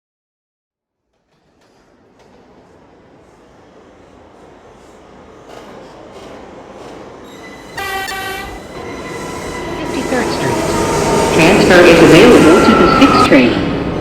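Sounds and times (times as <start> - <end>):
subway train running in tunnel: 0.9 - 14.0
train horn blast: 7.8 - 8.8.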